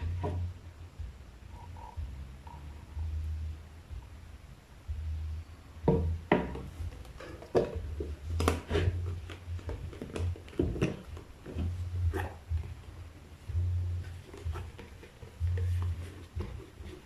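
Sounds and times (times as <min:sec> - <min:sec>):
low rumble: 0:00.0 - 0:07.1, 0:11.6 - 0:14.8
objects being handled: 0:05.9 - 0:17.0.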